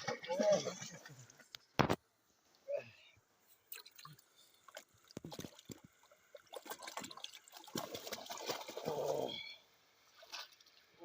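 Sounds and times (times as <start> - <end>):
water splashing and sloshing: 3.5 - 9.4, 10.0 - 11.0.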